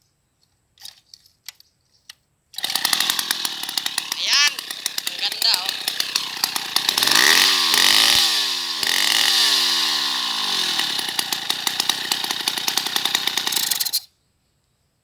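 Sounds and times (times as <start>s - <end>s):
chainsaw revving and idling: 2.6s - 14.1s.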